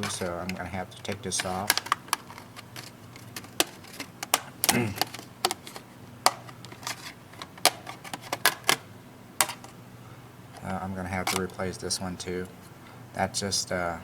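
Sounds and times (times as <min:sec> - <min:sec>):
plastic clips snapping: 0:00.0 - 0:09.8.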